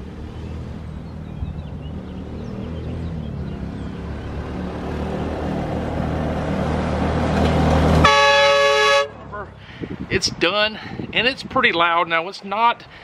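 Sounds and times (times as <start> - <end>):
air horn blasting chord: 8.0 - 9.2.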